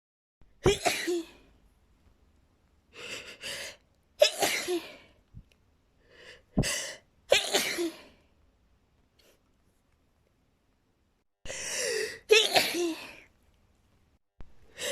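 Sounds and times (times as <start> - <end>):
woman sneezing: 0.6 - 1.4, 12.3 - 13.2.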